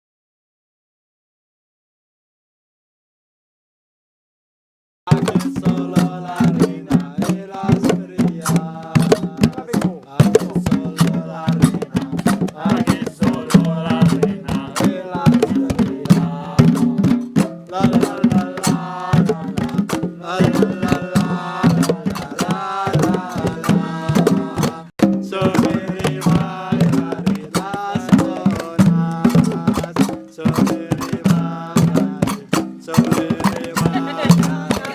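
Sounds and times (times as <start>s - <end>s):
fast hand-drum beating: 5.1s - 34.9s
voices singing: 5.1s - 34.9s.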